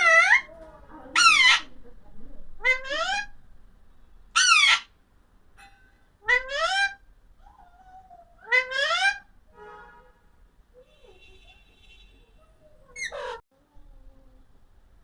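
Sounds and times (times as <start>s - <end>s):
parrot calling: 0.0s - 0.5s, 1.1s - 1.8s, 2.5s - 3.4s, 4.3s - 5.0s, 5.6s - 9.4s, 12.4s - 13.4s.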